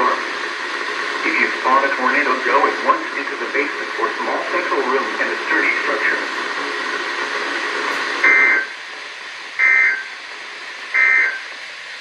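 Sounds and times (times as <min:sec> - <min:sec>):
radio hiss: 0:00.0 - 0:12.0
warbling data bursts: 0:08.2 - 0:08.8, 0:09.6 - 0:10.2, 0:10.9 - 0:11.6.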